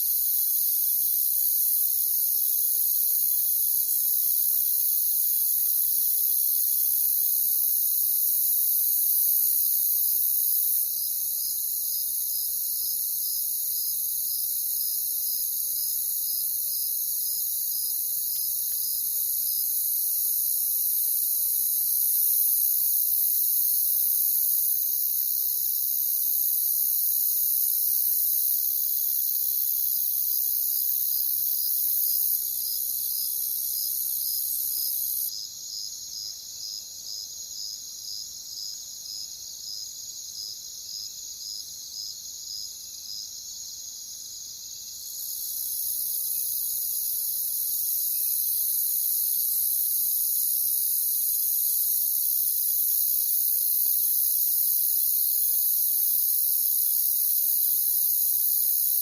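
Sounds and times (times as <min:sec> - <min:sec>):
single cricket chirping: 0:00.0 - 0:59.0
crickets trilling: 0:44.8 - 0:59.0.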